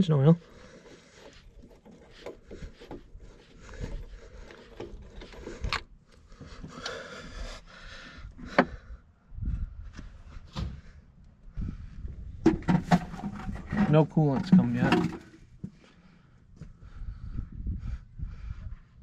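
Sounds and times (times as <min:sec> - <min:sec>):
tools knocking and scraping: 0:12.4 - 0:15.4.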